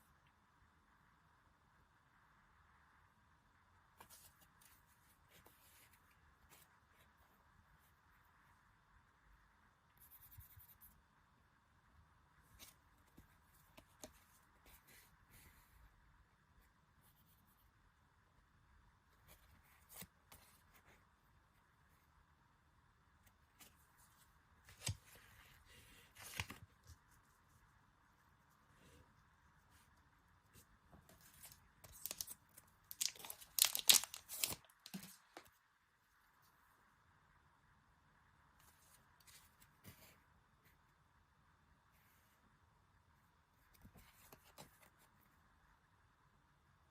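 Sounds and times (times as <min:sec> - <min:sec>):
packaging and cards rustling: 0:31.2 - 0:35.5.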